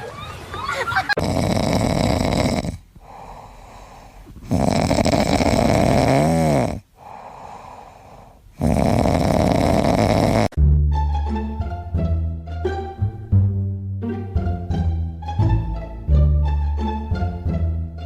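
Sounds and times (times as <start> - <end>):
pet snoring loudly: 1.2 - 10.6
quiet breathing: 1.7 - 10.6.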